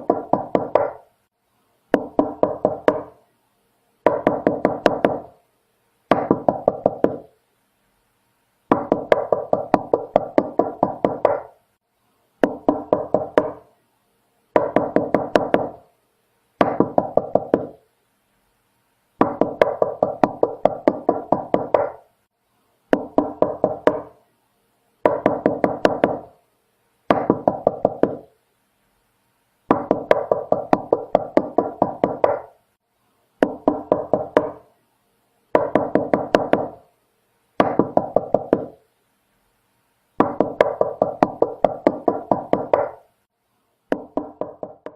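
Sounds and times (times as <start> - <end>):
knocking on a door: 0.0 - 1.0, 1.9 - 3.1, 4.1 - 5.3, 6.1 - 7.3, 8.7 - 11.5, 12.4 - 13.6, 14.6 - 15.8, 16.6 - 17.8, 19.2 - 22.0, 22.9 - 24.1, 25.0 - 26.3, 27.1 - 28.3, 29.7 - 32.5, 33.4 - 34.6, 35.6 - 36.8, 37.6 - 38.8, 40.2 - 43.0, 43.9 - 44.9.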